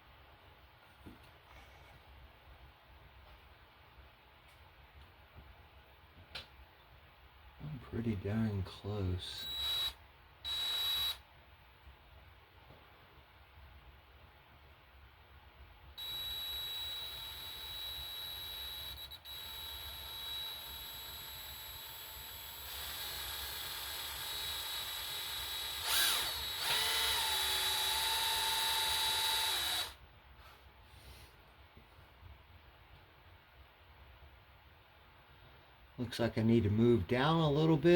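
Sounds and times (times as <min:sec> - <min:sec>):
electric drill whining: 0:09.4 - 0:11.2, 0:16.0 - 0:30.0.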